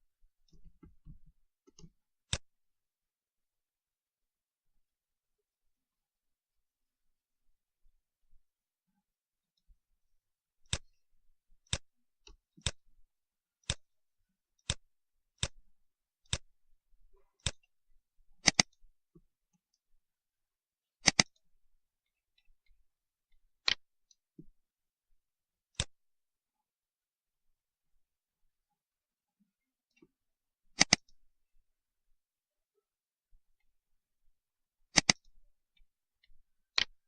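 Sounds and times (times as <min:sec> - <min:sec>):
computer mouse clicking: 0:10.7 - 0:11.0, 0:11.6 - 0:12.9, 0:13.6 - 0:13.9, 0:14.6 - 0:15.6, 0:16.2 - 0:16.5, 0:17.4 - 0:17.7, 0:18.4 - 0:18.8, 0:21.0 - 0:21.4, 0:25.8 - 0:26.0, 0:30.8 - 0:31.2, 0:34.9 - 0:35.3.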